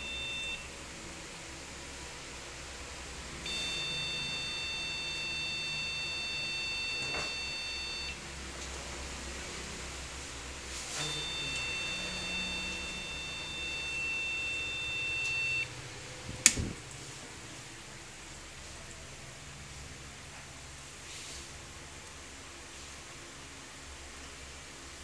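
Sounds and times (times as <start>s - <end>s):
high-pitched computer beep: 3.5s - 8.2s, 11.0s - 15.7s.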